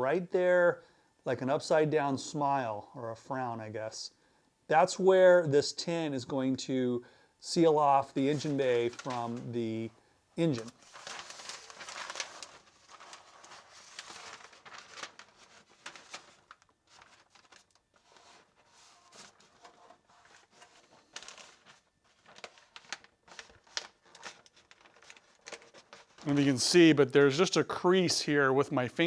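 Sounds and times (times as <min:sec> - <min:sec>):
paper crinkling: 0:08.2 - 0:09.6, 0:10.4 - 0:26.6.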